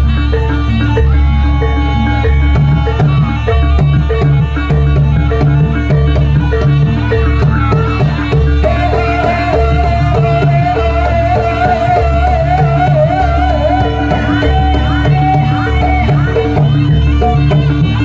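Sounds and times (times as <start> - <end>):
hand drums beating: 0.0 - 18.0
wavering high melody: 0.0 - 18.0.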